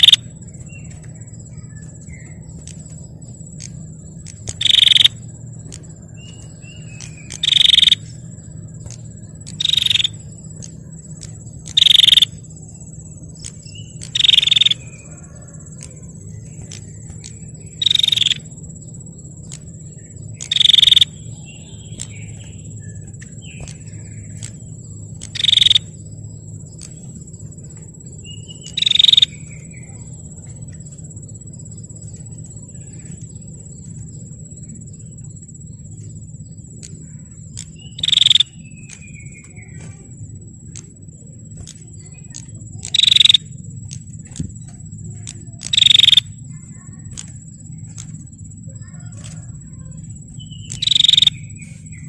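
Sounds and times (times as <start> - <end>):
bird rattling call: 0.0 - 1.0, 3.6 - 5.2, 6.2 - 12.4, 13.4 - 18.5, 20.4 - 26.0, 28.3 - 30.0, 36.8 - 40.1, 41.6 - 52.0.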